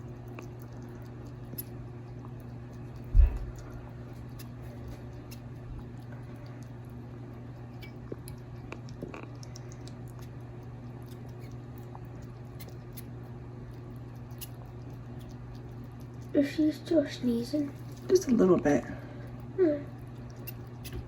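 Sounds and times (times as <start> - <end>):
steady low hum: 0.0 - 21.0
sugar glider clicking: 13.7 - 16.3.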